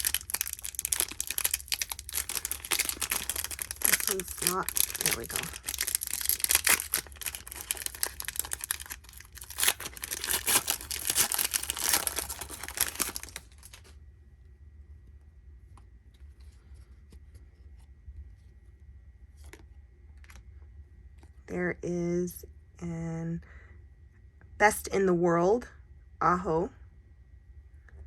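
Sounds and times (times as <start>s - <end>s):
cards being handled: 0.0s - 13.9s
wrapper crinkling and tearing: 0.0s - 13.9s.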